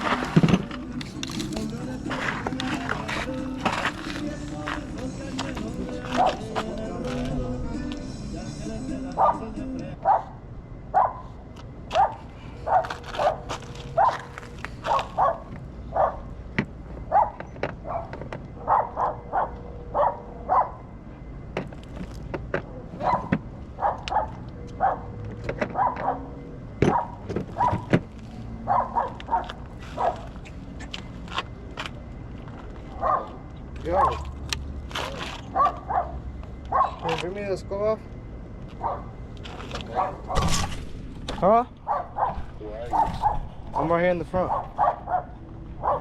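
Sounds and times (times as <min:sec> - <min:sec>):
dog barking: 0:06.1 - 0:06.4, 0:09.2 - 0:11.3, 0:11.9 - 0:16.3, 0:17.1 - 0:20.8, 0:23.0 - 0:27.9, 0:28.6 - 0:30.3, 0:32.9 - 0:33.4, 0:35.5 - 0:37.2, 0:38.8 - 0:39.2, 0:39.9 - 0:40.5, 0:41.8 - 0:46.0.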